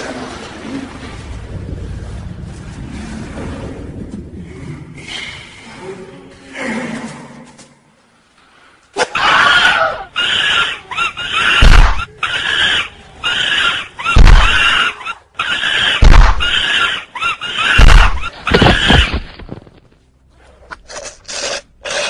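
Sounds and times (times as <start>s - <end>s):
chimpanzee shrieking: 9.0s - 19.2s.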